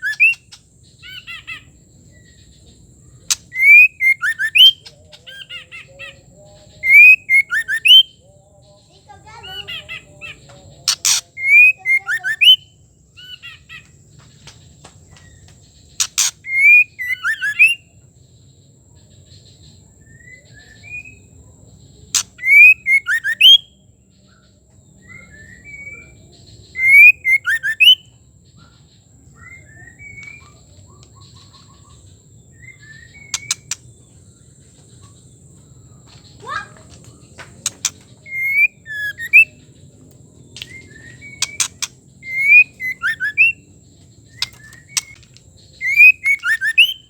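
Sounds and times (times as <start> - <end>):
soft bird chirps: 0.0 - 47.0
bird whistled call with click: 40.6 - 43.5, 44.4 - 47.0.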